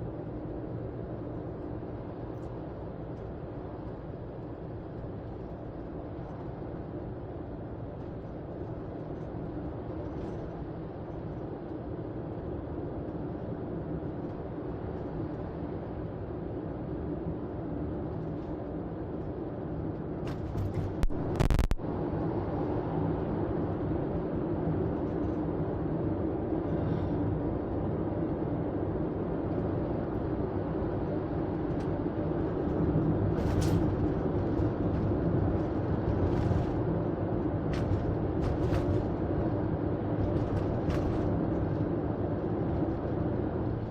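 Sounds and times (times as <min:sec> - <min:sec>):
car road and engine noise: 0:00.0 - 0:43.9.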